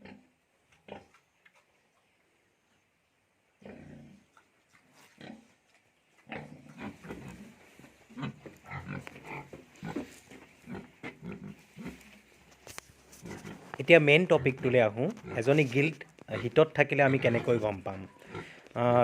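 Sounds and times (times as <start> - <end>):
pigs grunting: 3.6 - 4.3, 6.2 - 12.2, 13.2 - 19.0.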